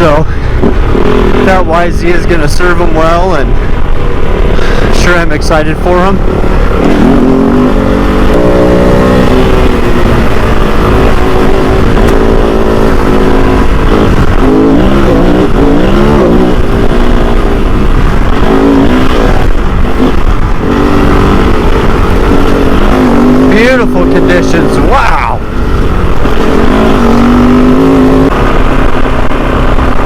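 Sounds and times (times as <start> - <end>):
motorcycle engine revving: 0.0 - 30.0.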